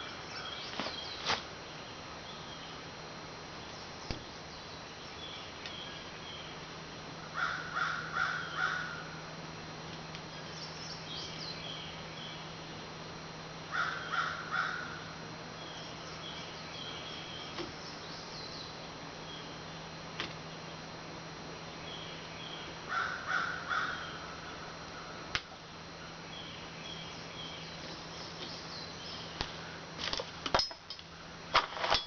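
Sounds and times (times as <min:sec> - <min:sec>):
faint background chirping: 0:00.0 - 0:30.0
crow cawing: 0:07.3 - 0:09.2, 0:13.7 - 0:15.2, 0:22.9 - 0:25.2.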